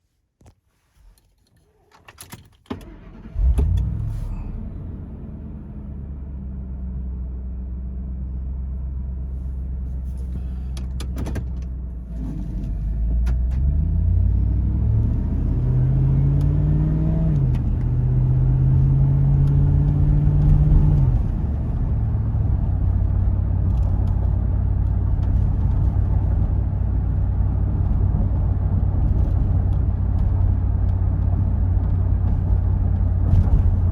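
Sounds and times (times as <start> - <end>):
car engine starting and idling: 2.6 - 33.9.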